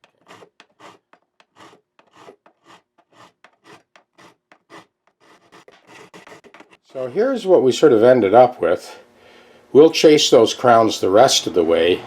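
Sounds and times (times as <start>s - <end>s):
file rasping on metal frets: 0.0s - 7.3s.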